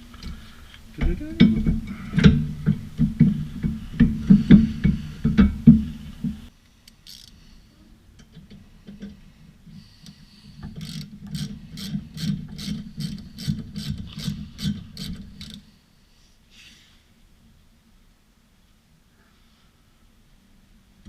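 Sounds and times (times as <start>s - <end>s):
ratchet wrench clicking: 6.9s - 7.4s, 10.8s - 15.6s.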